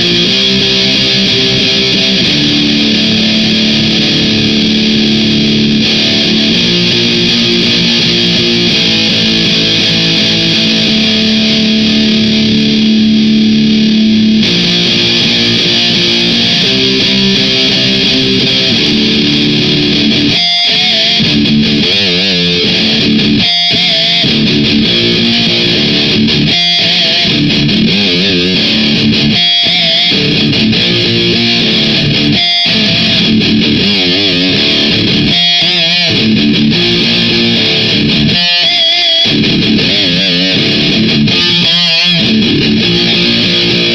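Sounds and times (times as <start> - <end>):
distorted electric guitar riff: 0.0 - 43.9.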